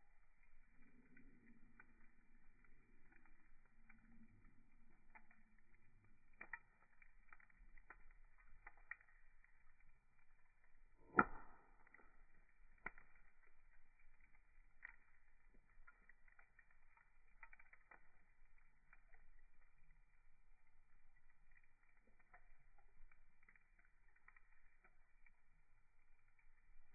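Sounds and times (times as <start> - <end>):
wood fire crackling: 0.0 - 26.9
sharp fire pop: 11.0 - 12.0.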